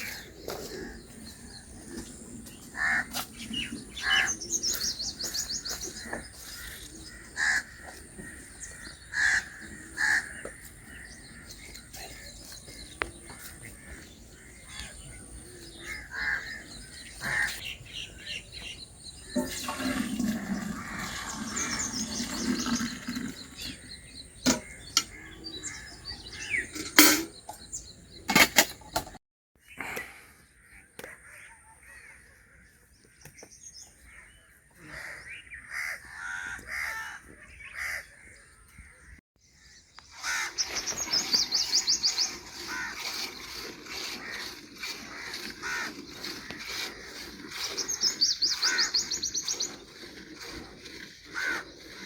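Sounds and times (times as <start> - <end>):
crows cawing: 2.7 - 12.3, 13.3 - 17.6, 34.0 - 39.2, 40.1 - 41.6, 42.5 - 49.6, 51.2 - 52.0
high chirping bird trills: 39.8 - 43.6.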